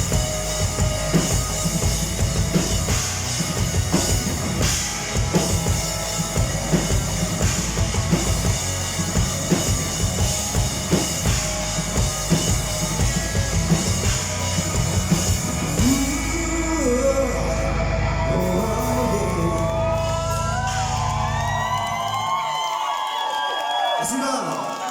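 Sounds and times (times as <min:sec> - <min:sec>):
drum kit beat: 0:00.0 - 0:17.7
live rock band playing: 0:00.0 - 0:21.9.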